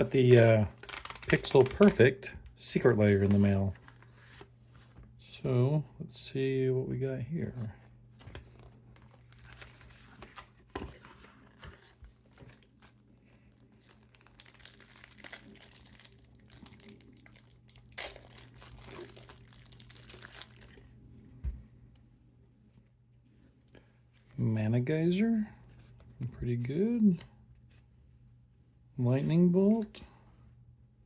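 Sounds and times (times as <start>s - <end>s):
packaging torn and crinkled: 0.0s - 2.0s, 9.1s - 10.4s, 11.5s - 20.9s
faint steady hum: 0.0s - 31.0s.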